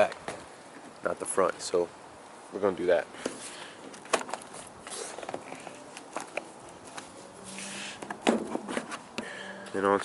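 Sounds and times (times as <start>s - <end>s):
soft scrape: 7.0s - 9.1s.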